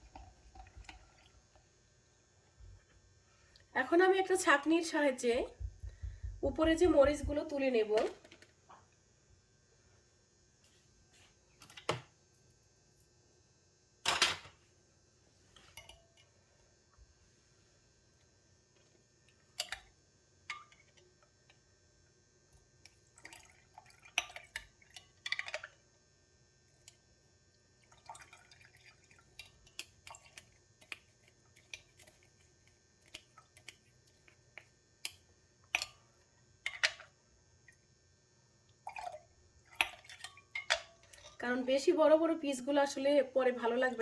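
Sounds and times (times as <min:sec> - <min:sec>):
liquid dripping: 0:22.8 - 0:25.8, 0:27.8 - 0:32.3, 0:38.6 - 0:41.5.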